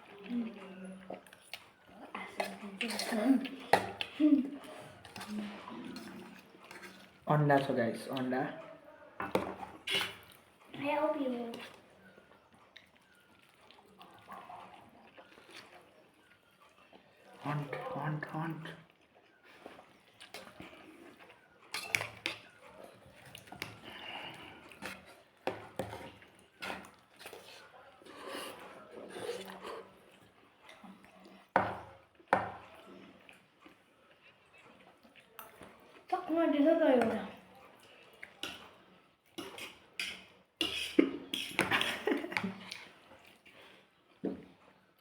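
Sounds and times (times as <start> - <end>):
eating noises: 0.0 - 7.3, 9.6 - 10.8, 11.5 - 36.2.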